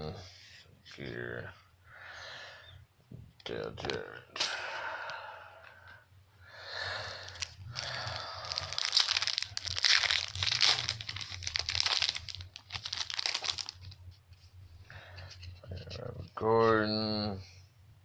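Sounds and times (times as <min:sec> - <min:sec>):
wrapper crinkling and tearing: 0:07.2 - 0:14.0.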